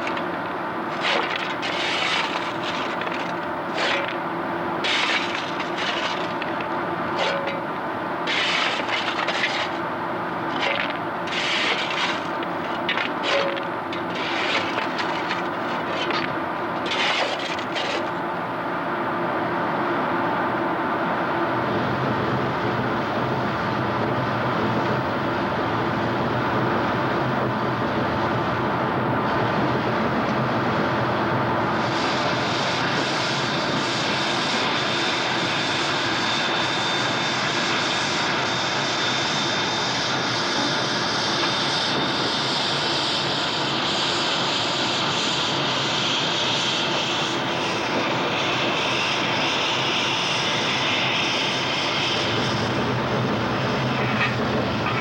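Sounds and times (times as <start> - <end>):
steam train roaring: 0.0 - 18.3, 31.7 - 55.0.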